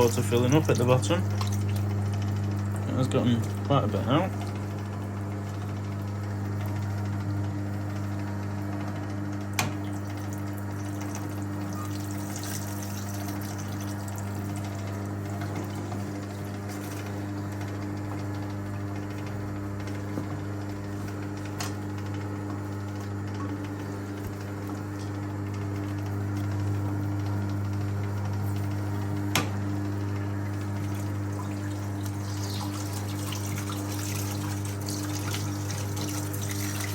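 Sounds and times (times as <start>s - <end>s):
water running into tub: 0.0s - 4.5s, 9.8s - 17.0s, 30.4s - 36.9s
washing machine motor humming: 0.0s - 36.9s.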